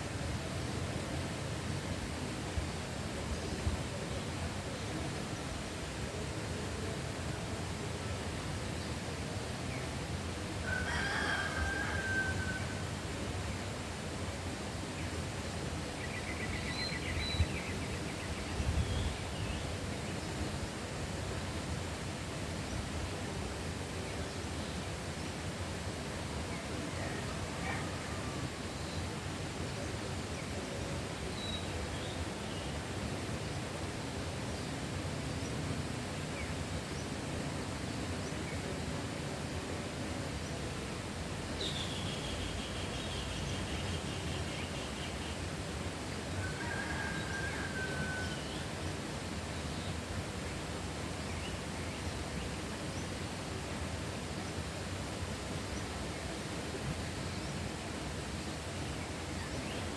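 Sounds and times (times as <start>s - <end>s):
steady rush of noise: 0.0s - 59.9s.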